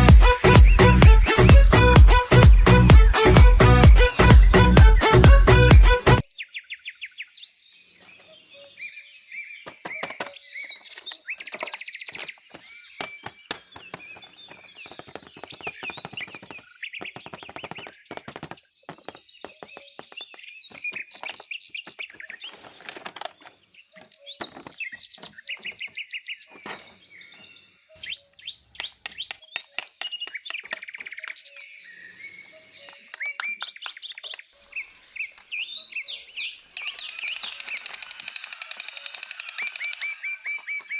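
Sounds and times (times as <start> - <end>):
small birds chirping: 0.0 - 2.8, 6.2 - 40.9
sharp clicks and knocks: 9.7 - 25.9.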